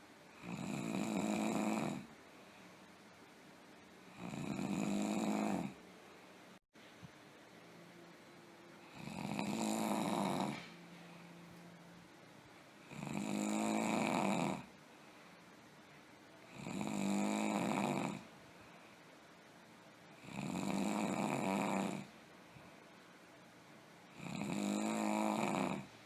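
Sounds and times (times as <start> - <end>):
person snoring: 0.4 - 2.1, 4.1 - 5.8, 8.8 - 10.8, 12.8 - 14.7, 16.5 - 18.3, 20.2 - 22.1, 24.1 - 25.9.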